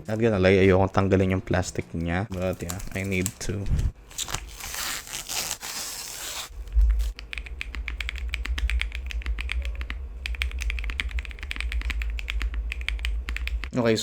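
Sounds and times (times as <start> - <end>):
plastic film crinkling: 2.3 - 7.2
mechanical keyboard typing: 7.1 - 13.7.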